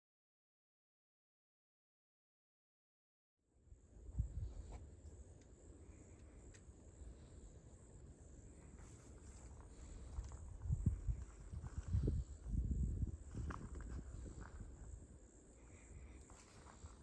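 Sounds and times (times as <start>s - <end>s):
insects trilling: 3.7s - 17.0s.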